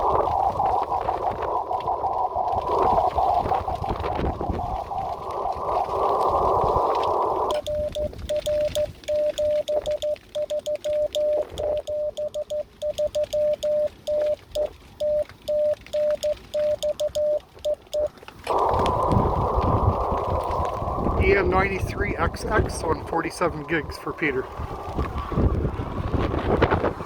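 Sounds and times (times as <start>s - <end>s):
receiver hiss: 0.0s - 25.6s
morse code tone: 7.5s - 18.1s.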